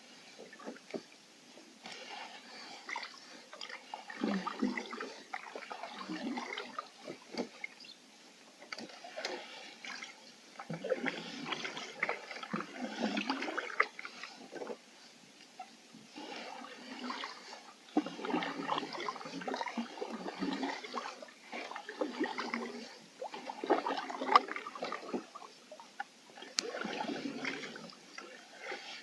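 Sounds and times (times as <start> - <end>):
paddle stroke swirling water: 0.0 - 29.0
water dripping from paddle: 2.9 - 8.0, 8.6 - 14.8, 17.0 - 29.0.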